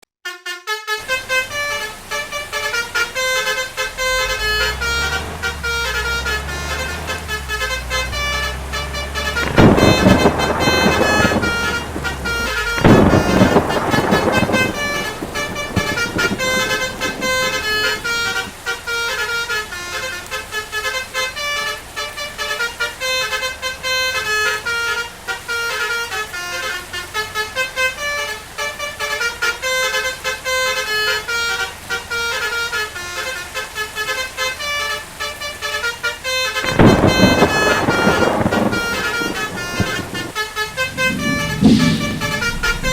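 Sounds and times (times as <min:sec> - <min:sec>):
multi-tone air horn tune: 0:00.2 - 0:42.9
loud rushing noise: 0:03.8 - 0:18.6, 0:36.7 - 0:42.9.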